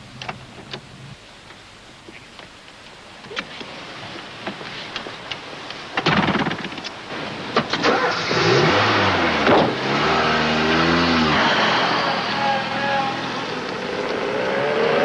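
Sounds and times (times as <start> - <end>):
car engine starting and revving: 7.1 - 15.0.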